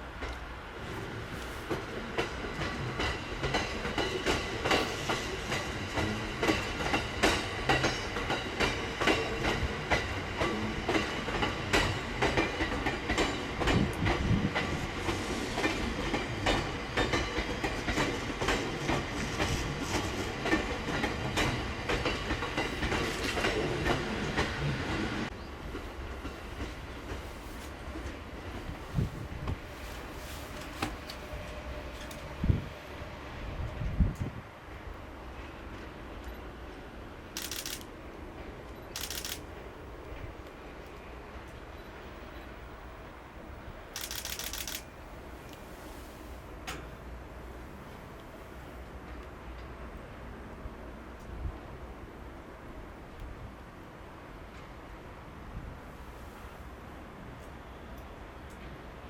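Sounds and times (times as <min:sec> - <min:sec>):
train running noise: 0:00.0 - 0:59.0
wheels clicking over rail joints: 0:01.6 - 0:29.7, 0:35.8 - 0:39.5, 0:44.0 - 0:45.6.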